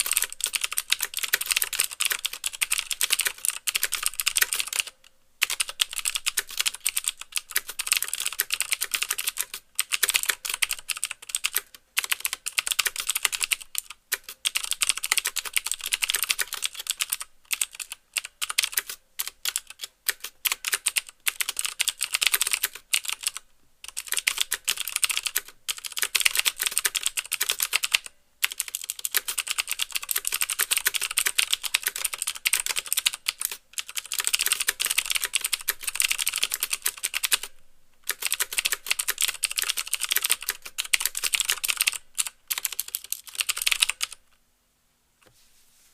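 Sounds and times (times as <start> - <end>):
mechanical keyboard typing: 0.0 - 44.2.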